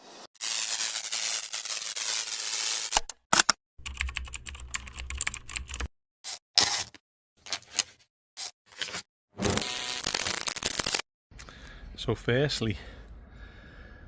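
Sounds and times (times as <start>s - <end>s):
choppy clicking fragments: 10.1s - 11.0s.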